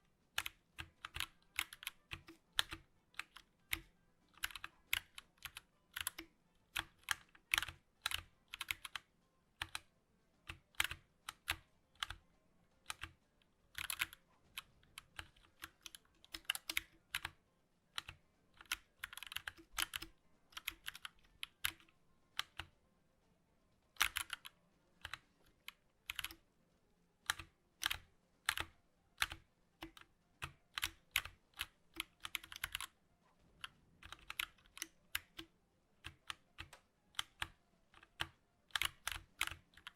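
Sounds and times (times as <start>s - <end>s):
clicky keyboard typing: 0.3s - 22.8s, 23.9s - 26.5s, 27.2s - 39.9s.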